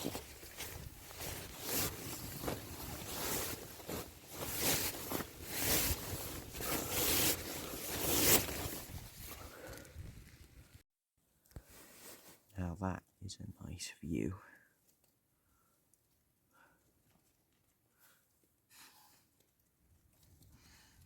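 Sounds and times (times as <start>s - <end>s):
nylon fabric rustling and flapping: 0.0s - 9.7s.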